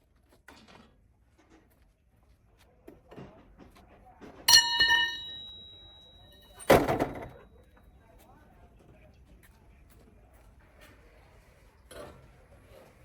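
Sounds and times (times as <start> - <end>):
metal object ringing: 4.5 - 7.0.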